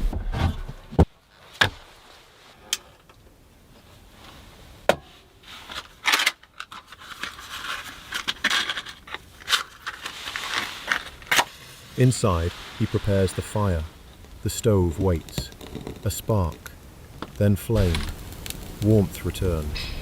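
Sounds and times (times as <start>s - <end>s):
objects scraping and rubbing: 6.7s - 20.0s.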